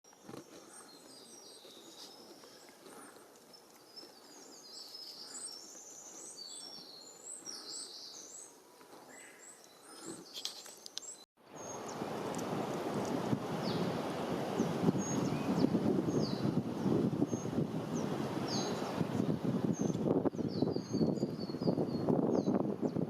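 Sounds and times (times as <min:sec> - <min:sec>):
songbirds chirping and trilling: 0:00.1 - 0:12.1, 0:13.6 - 0:23.0.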